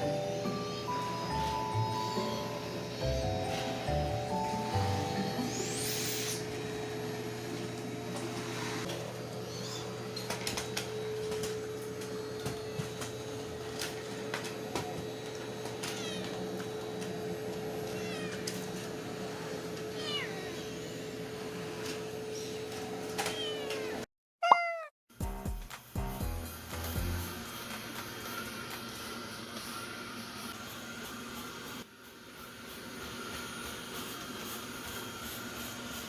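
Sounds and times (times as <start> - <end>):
cat meowing: 17.9 - 18.6, 20.0 - 20.7, 23.3 - 24.9.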